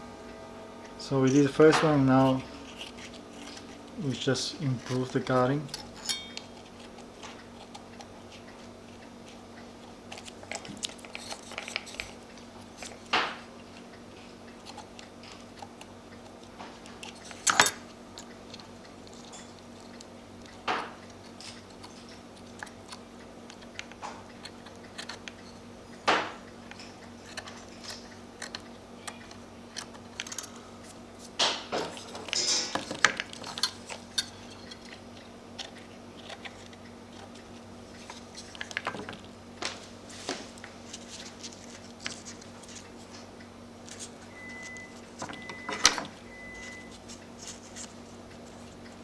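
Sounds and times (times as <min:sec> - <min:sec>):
faint hum: 0:00.0 - 0:49.0
crisp paper cuts: 0:01.1 - 0:13.9
paper handling clicks: 0:01.2 - 0:25.5, 0:26.1 - 0:46.2.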